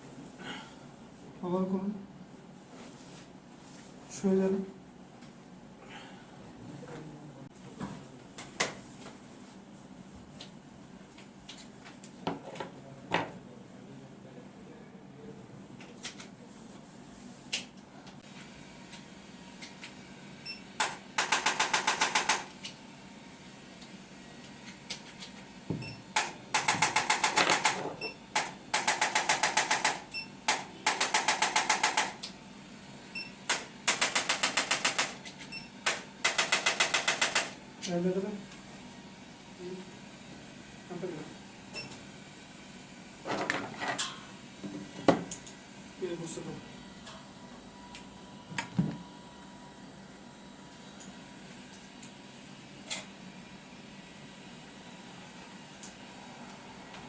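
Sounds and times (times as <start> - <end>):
rapid mechanical clicking: 20.8 - 22.5, 26.2 - 27.8, 28.4 - 32.3, 33.5 - 35.2, 35.9 - 37.6.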